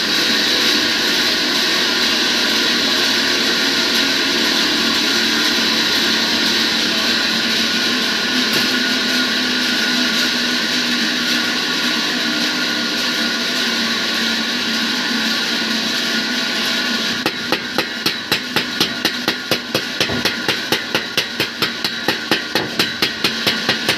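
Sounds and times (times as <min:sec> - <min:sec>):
mechanical hum: 0:00.0 - 0:23.9
hammer striking metal: 0:17.2 - 0:23.9.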